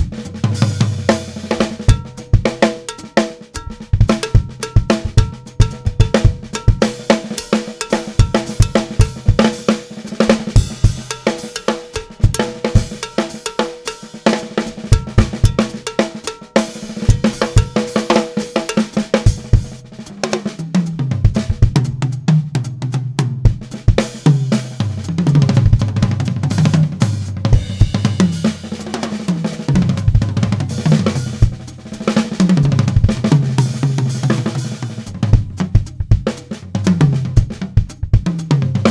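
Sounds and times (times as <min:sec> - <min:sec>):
drum kit solo: 0:00.0 - 0:38.9
tuned toms playing a melody: 0:00.4 - 0:20.0.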